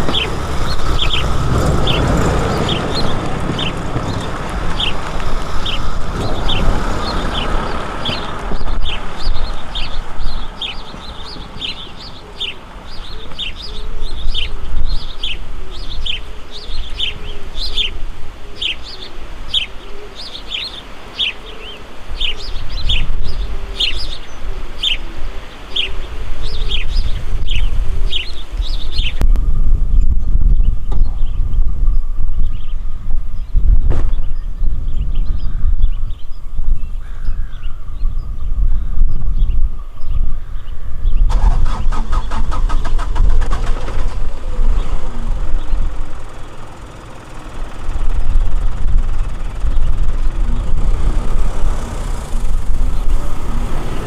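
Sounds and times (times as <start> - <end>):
low rumble: 0.0 - 16.2, 37.9 - 54.0
bird chirping: 0.0 - 54.0.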